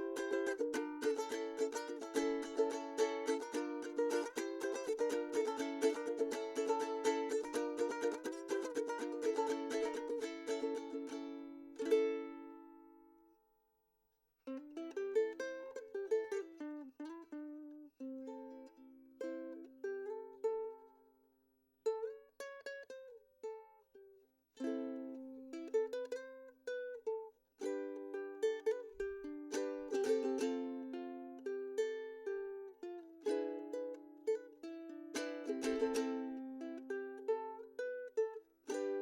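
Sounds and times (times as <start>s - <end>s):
ukulele strummed chord: 0.0s - 12.8s, 27.6s - 32.4s, 33.2s - 39.0s
ukulele plucked melody: 0.0s - 13.4s, 14.5s - 21.2s, 21.8s - 39.0s.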